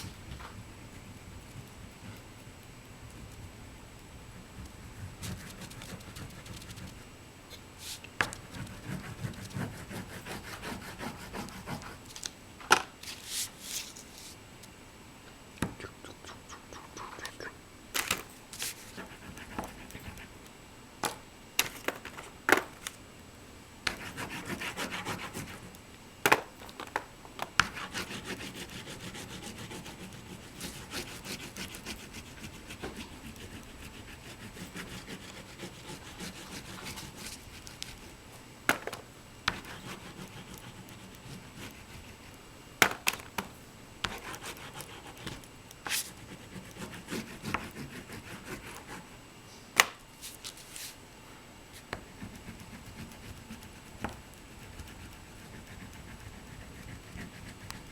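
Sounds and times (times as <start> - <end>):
oil pastel scratching on paper: 4.5 - 7.1, 7.8 - 12.2, 18.6 - 20.4, 23.9 - 25.8, 27.6 - 38.1, 39.5 - 42.4, 44.0 - 49.2, 51.8 - 57.9.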